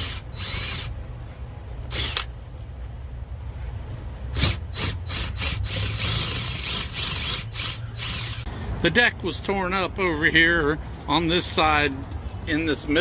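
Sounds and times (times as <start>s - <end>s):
power drill grinding into wood: 0.0s - 0.9s, 4.4s - 8.5s
steady low hum: 0.0s - 8.9s.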